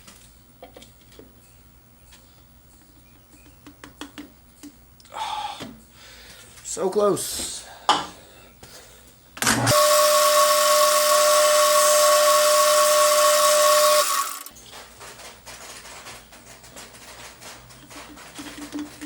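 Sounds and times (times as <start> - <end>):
electric motor whining: 9.4 - 14.5.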